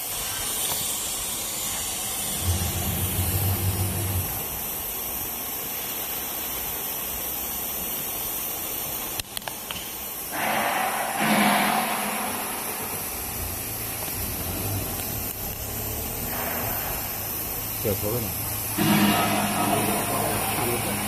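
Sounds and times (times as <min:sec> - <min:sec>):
cnc router hissing and humming: 0:00.0 - 0:05.0, 0:10.4 - 0:21.0.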